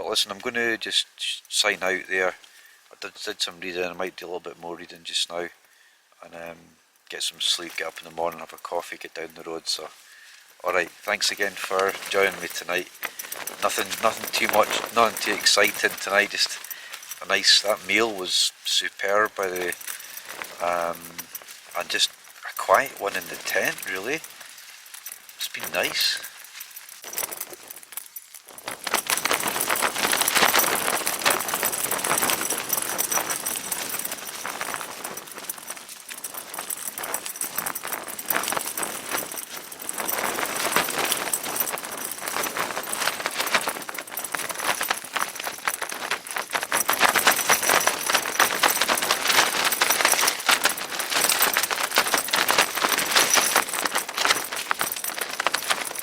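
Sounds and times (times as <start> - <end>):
tent fabric flapping: 9.6 - 56.0
zip pulls rattling: 10.6 - 18.4, 19.0 - 56.0.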